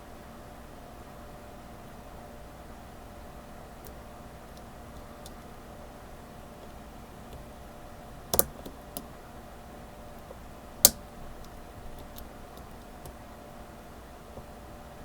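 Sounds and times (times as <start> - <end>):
lock pick clicking in padlock: 8.3 - 9.1.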